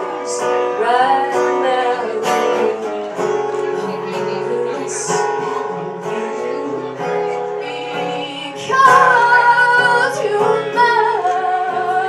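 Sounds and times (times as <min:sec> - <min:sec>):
plucked guitar: 0:00.0 - 0:12.0
woman singing long notes: 0:07.6 - 0:12.0.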